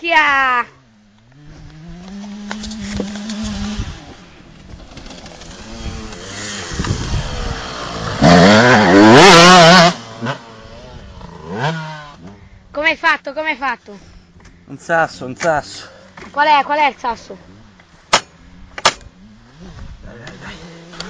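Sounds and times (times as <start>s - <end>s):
motorbike engine revving: 1.2s - 12.5s, 18.3s - 21.0s.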